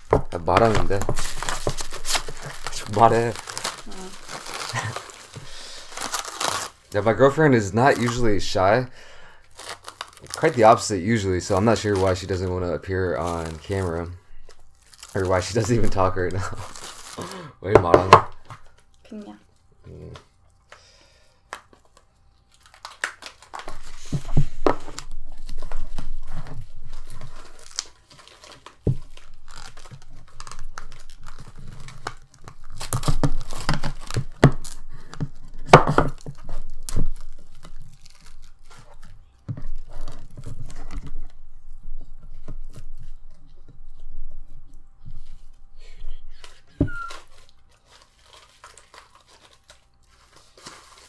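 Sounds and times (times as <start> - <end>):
plastic cling wrap crackling: 0.0 - 17.7, 21.4 - 44.1, 46.3 - 51.0.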